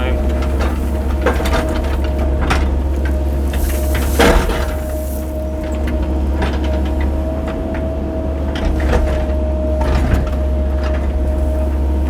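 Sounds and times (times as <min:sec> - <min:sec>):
bucket scraping gravel: 0:00.0 - 0:06.9
excavator diesel engine whining: 0:00.0 - 0:12.0.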